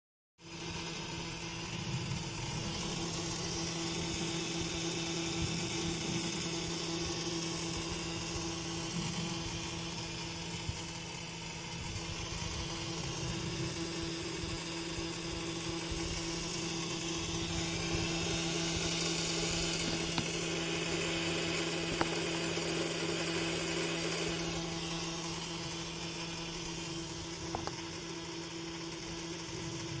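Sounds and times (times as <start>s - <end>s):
generator buzzing hum: 0.4s - 30.0s
rattly ratchet-like chatter: 0.5s - 30.0s.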